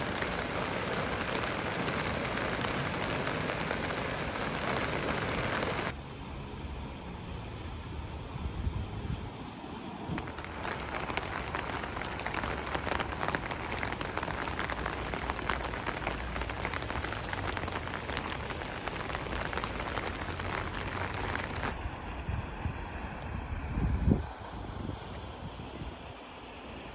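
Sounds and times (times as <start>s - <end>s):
heavy rain falling: 0.0s - 6.0s, 10.2s - 21.8s.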